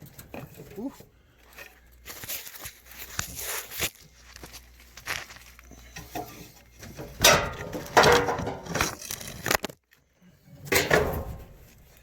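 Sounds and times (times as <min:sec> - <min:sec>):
parts and tools knocking and rattling: 0:05.8 - 0:09.6, 0:10.6 - 0:12.0.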